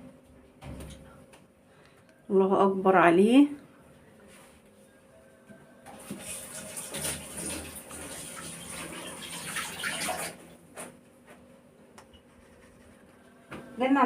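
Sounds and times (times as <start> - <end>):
kitchen tap running: 5.9 - 10.4.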